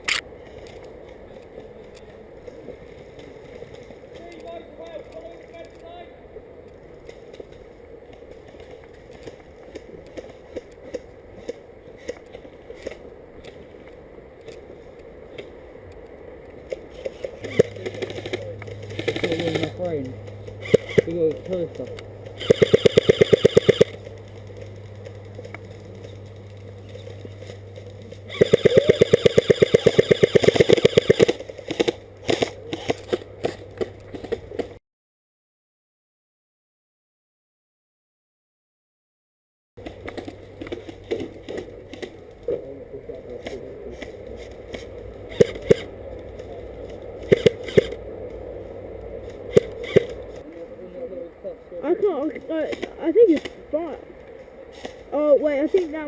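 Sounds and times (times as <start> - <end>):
low steady background noise: 0.0 - 34.8, 39.8 - 56.0
airsoft rifle firing: 28.3 - 33.2.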